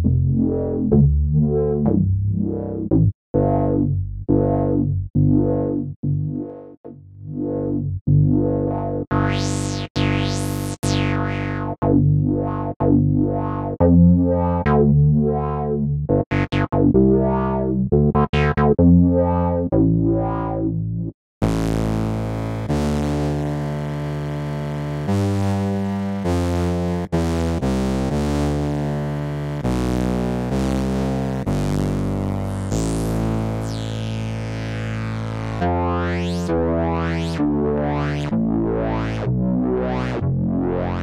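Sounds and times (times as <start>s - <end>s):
synthesizer playing bass notes: 0.0s - 41.0s.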